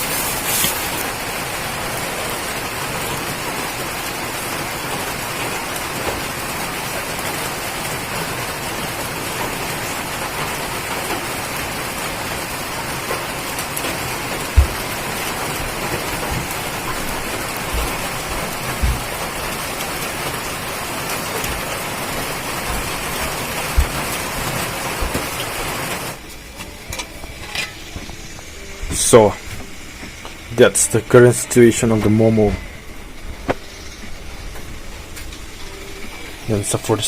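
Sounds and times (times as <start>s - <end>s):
steamer hissing and bubbling: 0.0s - 37.0s
soft low knocks: 14.0s - 20.2s, 21.4s - 25.6s.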